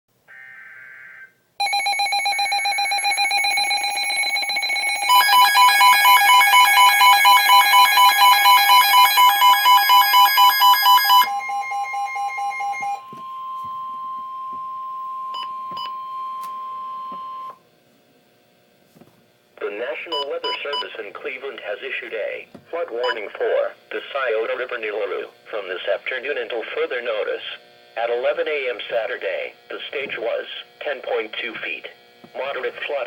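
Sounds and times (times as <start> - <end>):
rapidly pulsing alarm tone: 0.8 - 17.6.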